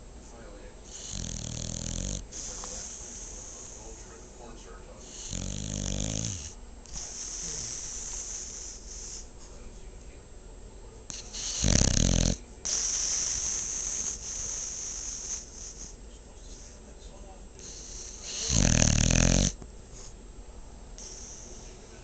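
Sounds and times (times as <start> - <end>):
dog snoring: 0.8 - 4.4, 5.0 - 9.3, 11.1 - 16.8, 17.6 - 19.6, 21.0 - 22.0
long hissing breath: 2.3 - 5.6, 6.9 - 9.3, 12.7 - 16.9, 17.6 - 18.8, 21.0 - 22.0.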